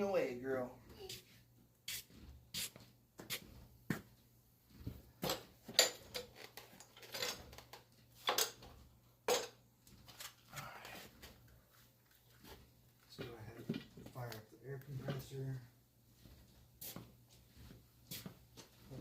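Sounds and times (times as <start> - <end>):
tools clicking and knocking: 5.2 - 10.2.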